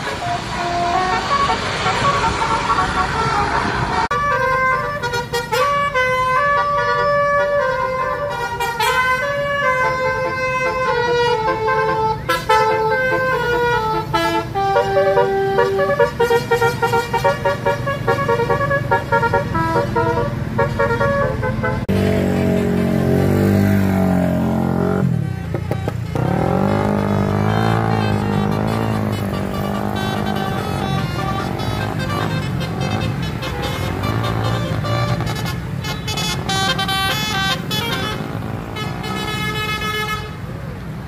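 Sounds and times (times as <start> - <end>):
musical bus horn melody: 0.0 - 23.0, 24.4 - 40.5
bus engine rumble: 0.0 - 41.0.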